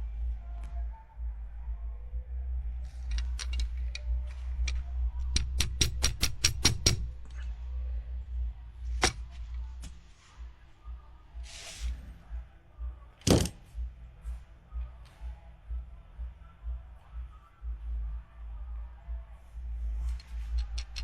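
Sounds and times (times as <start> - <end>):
low steady hum: 0.0 - 21.0
sharp clicks: 3.0 - 7.4, 20.1 - 21.0.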